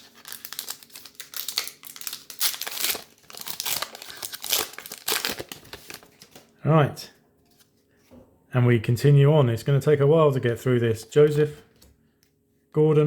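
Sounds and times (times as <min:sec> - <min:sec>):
wrapper crinkling and tearing: 0:00.0 - 0:06.5.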